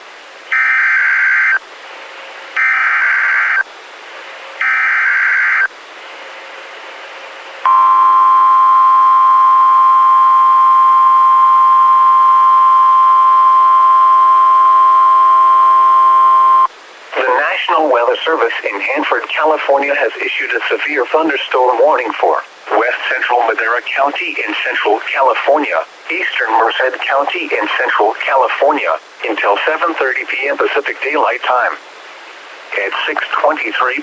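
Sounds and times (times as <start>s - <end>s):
steady loud attention tone: 7.6s - 18.0s.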